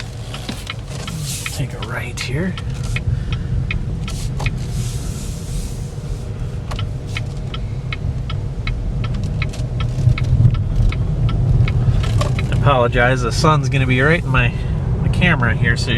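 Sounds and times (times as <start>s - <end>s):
low road rumble: 0.0s - 15.9s
light clicks and ticks: 6.7s - 12.7s.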